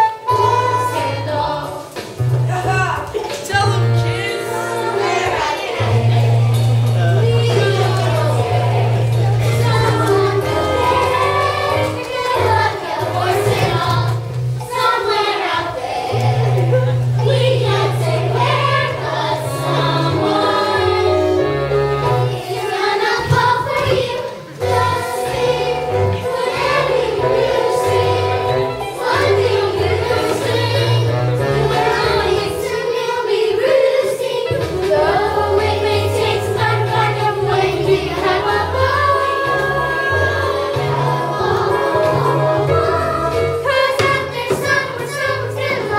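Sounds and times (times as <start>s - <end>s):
choir singing a song: 0.0s - 2.2s, 3.2s - 45.9s
instrumental backing with bass line: 0.2s - 32.8s.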